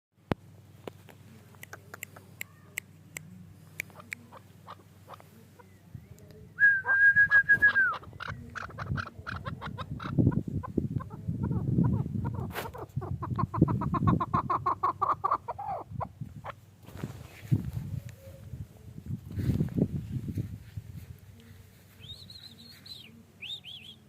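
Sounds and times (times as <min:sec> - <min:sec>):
partridge calling: 0:03.7 - 0:06.0, 0:07.6 - 0:16.6, 0:22.0 - 0:24.0.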